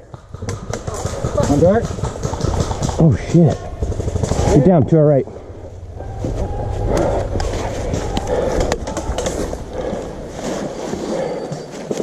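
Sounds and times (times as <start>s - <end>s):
sharp clicks and knocks: 0.0s - 4.6s
footsteps: 0.9s - 12.0s
wind rumble on microphone: 1.9s - 11.4s.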